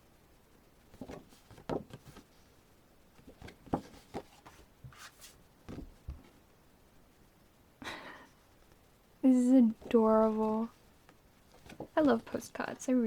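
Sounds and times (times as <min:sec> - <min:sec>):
paper rustling: 0:00.9 - 0:02.3, 0:03.2 - 0:06.2, 0:11.5 - 0:12.4.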